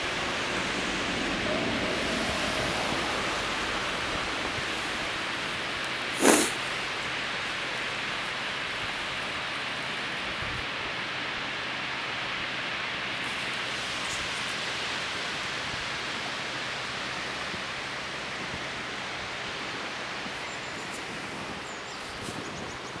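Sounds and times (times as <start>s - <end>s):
waterfall rushing: 0.0s - 7.2s.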